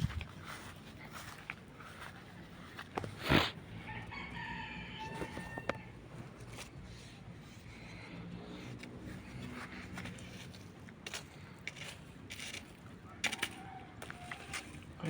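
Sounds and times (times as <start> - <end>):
rooster crowing: 3.8 - 6.0, 13.0 - 14.9.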